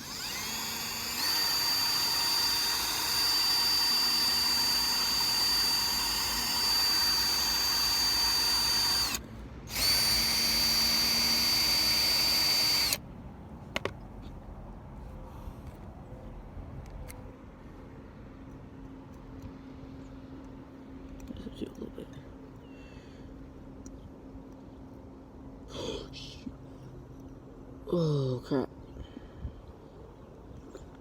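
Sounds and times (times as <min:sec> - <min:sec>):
power drill whining: 0:00.0 - 0:13.0.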